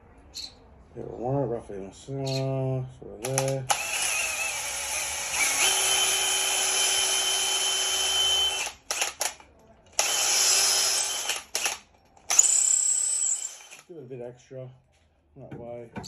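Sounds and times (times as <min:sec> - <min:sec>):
electric drill boring wood: 0:03.2 - 0:09.4, 0:10.0 - 0:13.8.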